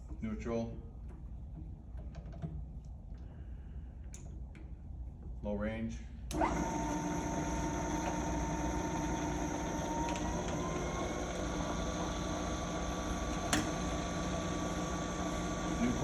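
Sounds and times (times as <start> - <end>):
milling machine spindle gear whine: 6.4 - 16.0.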